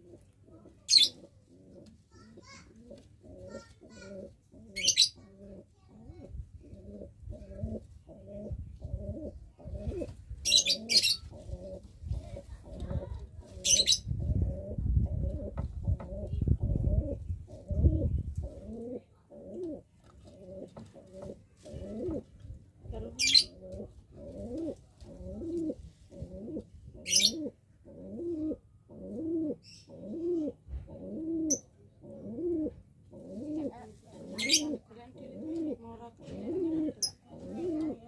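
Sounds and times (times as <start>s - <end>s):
pigeon cooing: 0.0s - 38.0s.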